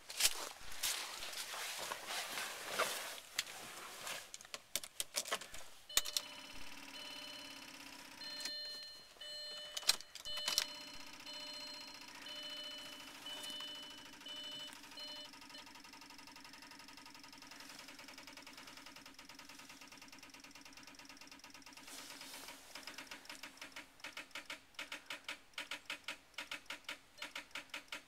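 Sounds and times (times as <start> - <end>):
rustling: 0.0 - 5.8, 21.7 - 23.9
low electrical hum: 0.0 - 25.6
key clicks: 4.5 - 7.1, 8.2 - 15.3
dashboard warning chime: 5.9 - 16.0.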